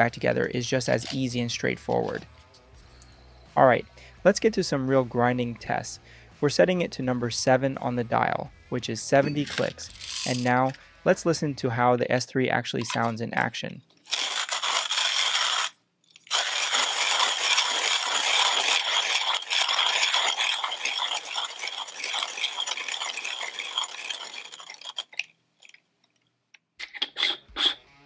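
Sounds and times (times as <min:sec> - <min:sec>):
hand coffee grinder crunching beans: 0:00.7 - 0:02.3, 0:09.4 - 0:10.8, 0:14.0 - 0:25.8.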